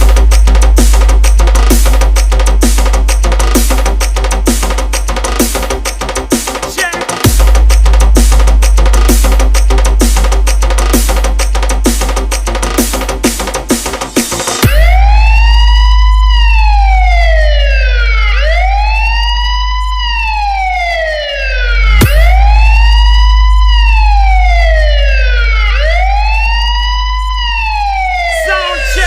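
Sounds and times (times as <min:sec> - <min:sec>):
deep bass drone: 0:00.0 - 0:29.0
wailing siren: 0:14.4 - 0:29.0.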